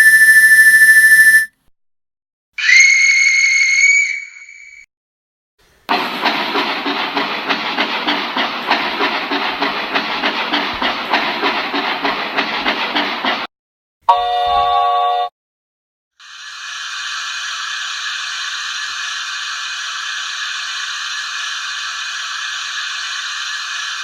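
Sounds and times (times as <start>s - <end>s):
steam whistle blast: 0.0s - 1.5s, 2.6s - 4.8s
steam locomotive chuffing: 5.9s - 13.5s, 16.3s - 24.0s
hiss of steam: 16.2s - 24.0s.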